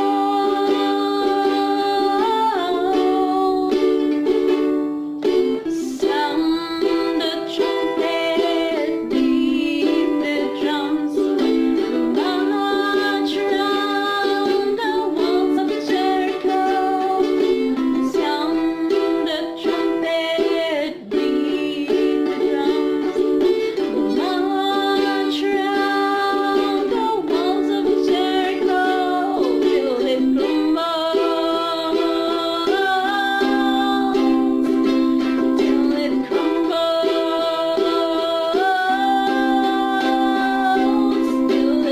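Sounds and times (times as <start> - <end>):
strummed ukulele chords: 0.0 - 41.9
ukulele melody: 0.0 - 41.9.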